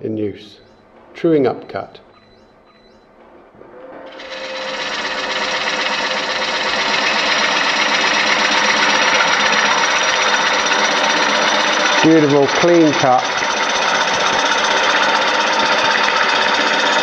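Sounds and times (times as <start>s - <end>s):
gouge cutting wood on lathe: 3.8s - 17.0s.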